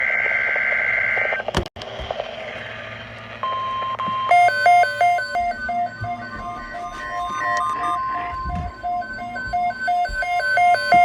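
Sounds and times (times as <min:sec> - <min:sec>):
static: 0:00.0 - 0:04.0
chiming melody: 0:04.3 - 0:11.0
steady alert tone: 0:04.3 - 0:11.0.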